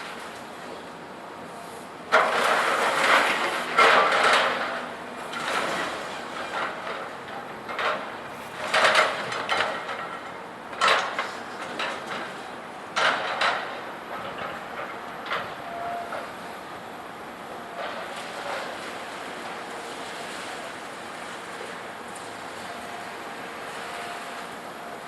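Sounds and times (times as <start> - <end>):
distant scrap metal clanging: 2.2 - 12.4.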